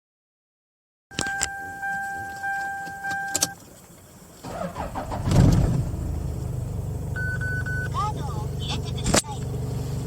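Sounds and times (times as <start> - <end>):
engine catching: 3.1 - 9.6
starter cranking diesel engine: 3.3 - 10.0
electronic warning tone: 7.2 - 8.0.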